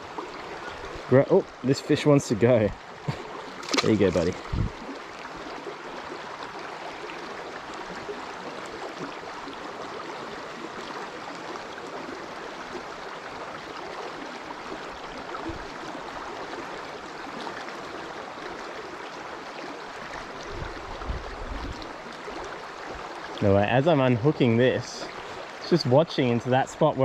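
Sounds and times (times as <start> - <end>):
stream flowing over shallows: 0.0 - 27.0
faint low bumps: 3.1 - 4.8.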